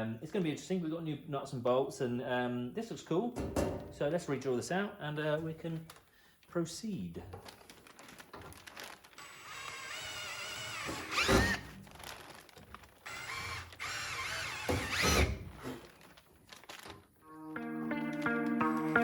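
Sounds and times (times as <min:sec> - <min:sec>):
power drill drilling into metal: 0:09.2 - 0:11.7, 0:13.0 - 0:15.5.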